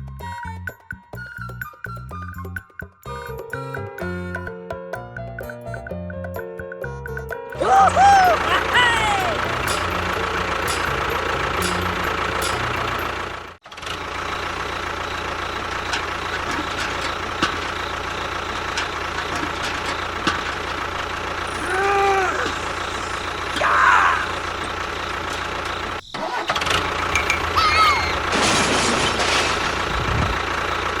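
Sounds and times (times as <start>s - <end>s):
rising and falling calls: 7.6s - 10.2s, 21.5s - 25.0s, 26.0s - 28.3s
small engine humming: 7.7s - 28.4s.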